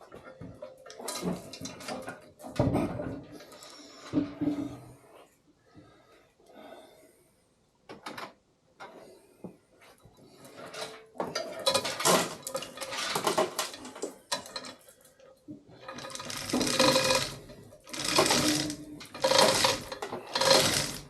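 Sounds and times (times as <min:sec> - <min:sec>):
metallic rattling and clatter: 0:10.7 - 0:14.8, 0:15.8 - 0:21.0.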